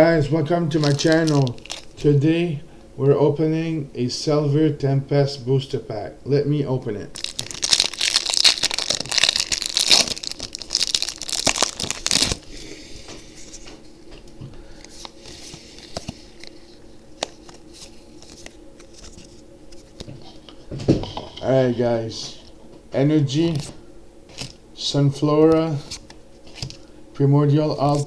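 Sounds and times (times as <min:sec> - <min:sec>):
cards rustling and ticking: 0:00.7 - 0:02.0, 0:07.2 - 0:20.5, 0:25.2 - 0:26.8
foil wrapper tearing and crinkling: 0:00.7 - 0:02.0, 0:07.1 - 0:12.7.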